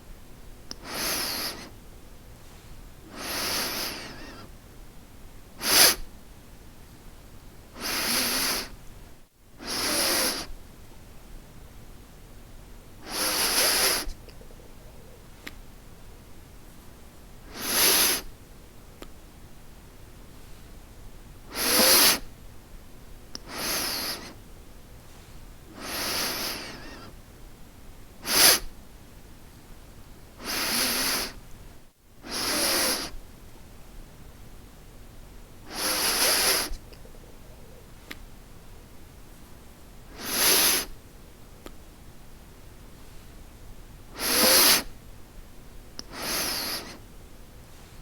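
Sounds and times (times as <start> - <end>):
person sniffing: 0.7 - 1.8, 2.5 - 4.6, 5.6 - 6.1, 7.8 - 8.8, 9.6 - 10.6, 13.0 - 15.2, 17.5 - 18.3, 21.5 - 22.3, 23.4 - 24.4, 25.1 - 27.2, 28.2 - 28.7, 30.4 - 31.4, 32.2 - 33.2, 35.7 - 37.9, 40.1 - 41.0, 44.1 - 45.0, 46.0 - 47.0.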